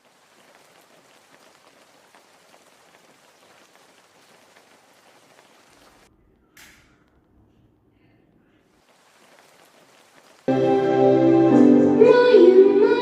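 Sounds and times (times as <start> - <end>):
rain pattering: 0.0 - 6.1, 8.7 - 12.1.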